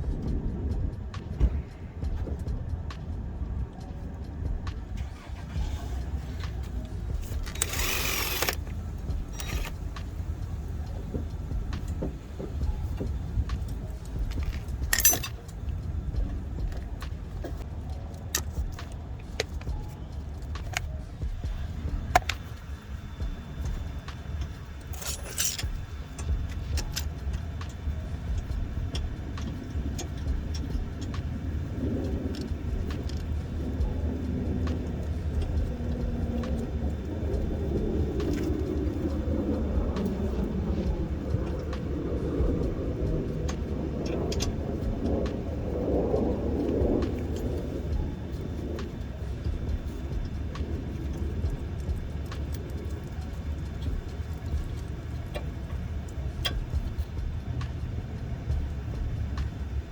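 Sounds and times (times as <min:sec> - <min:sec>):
steady low rumble: 0:00.0 - 0:59.9
metallic clinks of hand tools: 0:07.3 - 0:09.8, 0:14.3 - 0:15.6, 0:24.8 - 0:27.2.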